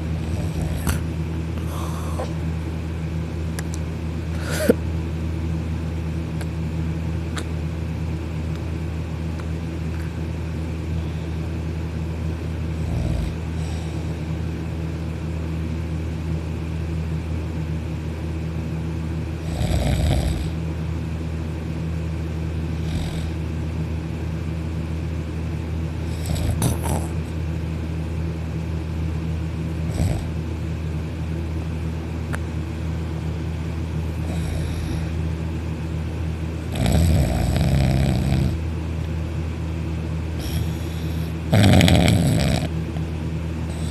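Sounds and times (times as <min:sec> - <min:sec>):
low hum: 0:00.0 - 0:19.5
loud snoring: 0:00.2 - 0:02.3, 0:12.8 - 0:14.2, 0:19.4 - 0:20.6, 0:22.8 - 0:23.4, 0:26.0 - 0:27.3, 0:29.9 - 0:30.4, 0:34.2 - 0:35.2, 0:36.7 - 0:38.6, 0:40.4 - 0:42.8, 0:43.7 - 0:43.9.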